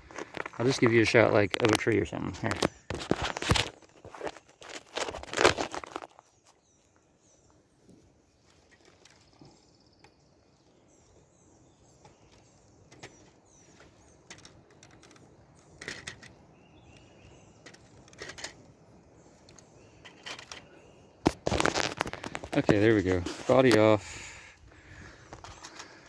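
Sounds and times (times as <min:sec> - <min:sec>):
faint bird chirps: 0:06.1 - 0:18.2, 0:19.0 - 0:21.2
plastic parts clicking and rattling: 0:12.3 - 0:16.4, 0:17.6 - 0:18.7, 0:19.4 - 0:20.7, 0:25.3 - 0:26.0.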